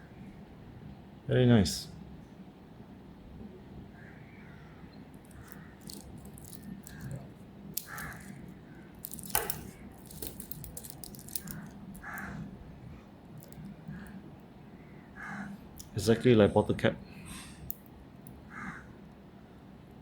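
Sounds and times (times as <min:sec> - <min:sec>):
wristwatch rattling and clicking: 0:05.2 - 0:12.4, 0:13.3 - 0:14.2.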